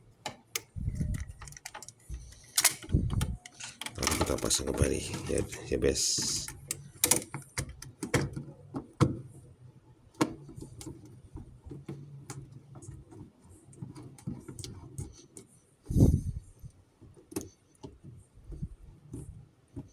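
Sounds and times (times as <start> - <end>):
plastic parts clicking and knocking: 0.2 - 9.4.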